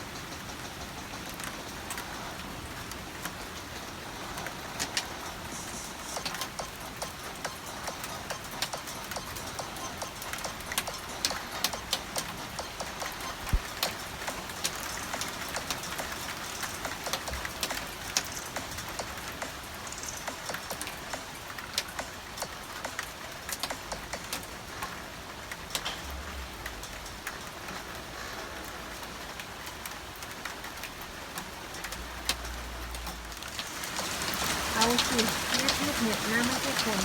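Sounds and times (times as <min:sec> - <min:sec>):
steady rain falling: 0:00.0 - 0:37.0
drops ticking on hard surface: 0:02.8 - 0:24.9, 0:31.4 - 0:37.0.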